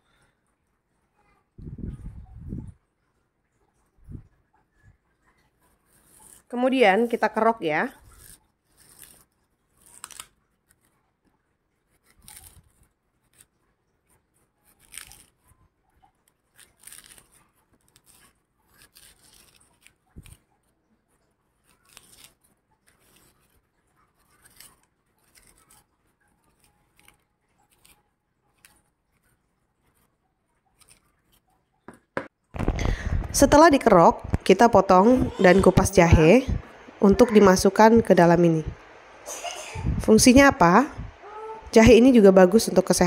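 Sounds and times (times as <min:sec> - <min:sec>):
spoon scraping pear flesh: 0:05.9 - 0:10.9, 0:11.9 - 0:13.5, 0:14.7 - 0:15.4, 0:16.4 - 0:20.5, 0:21.6 - 0:28.9.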